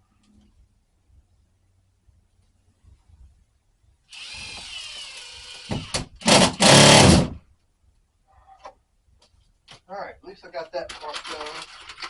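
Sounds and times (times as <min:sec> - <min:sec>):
power drill driving screws: 0:04.1 - 0:07.4.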